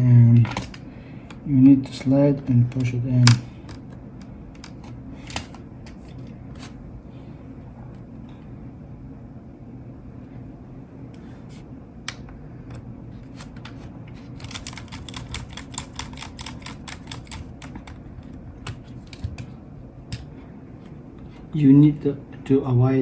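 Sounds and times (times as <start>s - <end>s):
small clicks on laptop parts: 2.7s - 6.8s, 12.1s - 19.5s.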